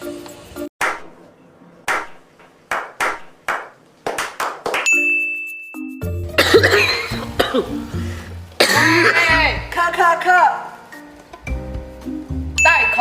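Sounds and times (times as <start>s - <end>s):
cartoon hits: 0.8s - 1.2s, 1.9s - 2.3s, 3.0s - 3.4s
background music with bass line: 5.8s - 9.8s, 11.3s - 12.7s.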